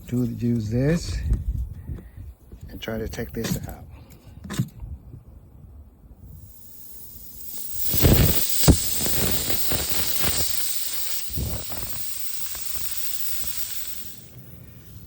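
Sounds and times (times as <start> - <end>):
air hissing out of tire: 6.2 - 15.0.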